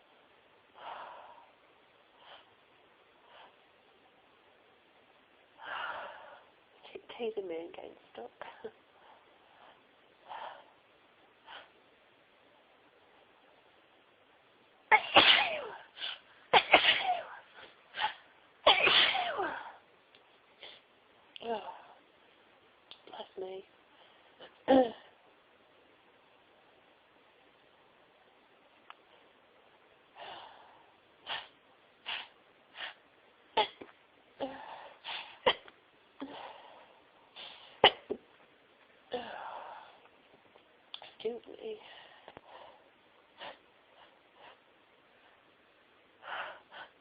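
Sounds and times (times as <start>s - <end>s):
woman sneezing: 14.9s - 17.4s, 18.0s - 19.7s.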